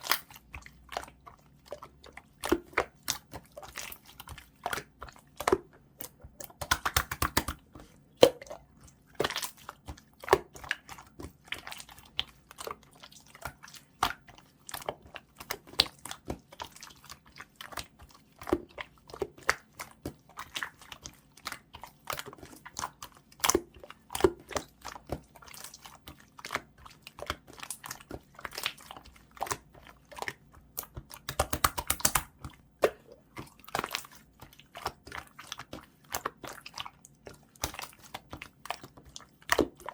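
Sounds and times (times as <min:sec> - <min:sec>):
slime squished by hand: 0:00.0 - 0:39.9.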